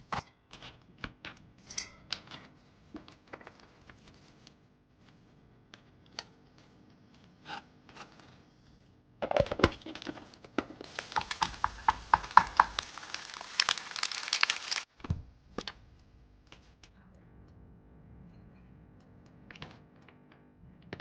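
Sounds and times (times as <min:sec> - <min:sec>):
packaging crinkling and tearing: 0:10.8 - 0:14.9.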